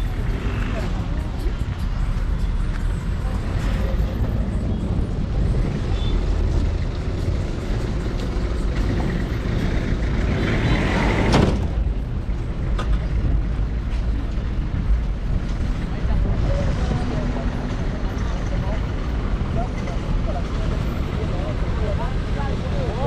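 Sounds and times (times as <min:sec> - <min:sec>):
traffic rumble: 0:00.0 - 0:23.0.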